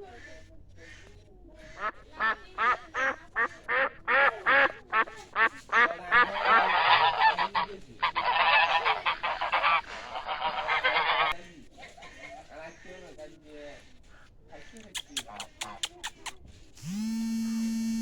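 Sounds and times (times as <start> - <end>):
waterfowl calling: 0.0 - 11.4.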